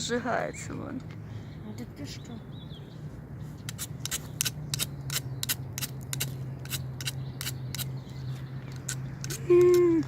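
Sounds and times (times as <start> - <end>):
knife scraping wood: 3.6 - 7.9, 8.7 - 9.5.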